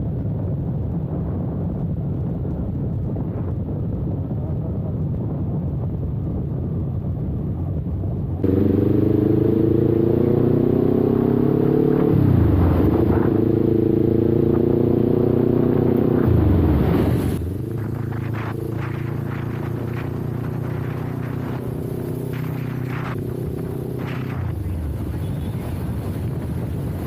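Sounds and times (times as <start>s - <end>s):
low wind rumble: 0.0s - 27.0s
motorcycle engine accelerating: 8.4s - 27.0s.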